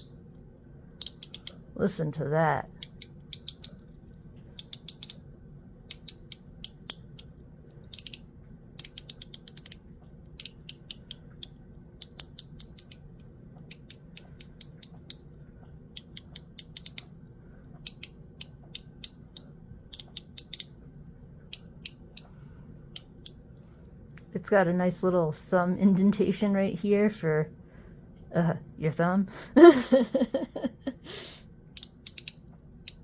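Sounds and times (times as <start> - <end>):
metal fidget slider clicking: 0.9 - 1.6, 2.8 - 3.9, 4.6 - 5.2, 5.9 - 15.2, 16.0 - 17.1, 17.8 - 20.8, 31.7 - 33.0.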